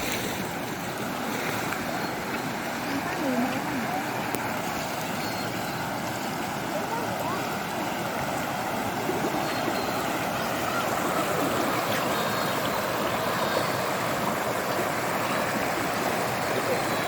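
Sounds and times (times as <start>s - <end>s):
flood water rushing: 0.0s - 17.0s.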